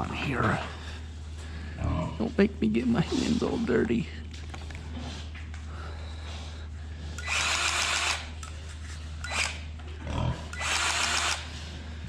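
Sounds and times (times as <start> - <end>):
grease gun motor running: 7.2 - 9.7, 10.5 - 11.6.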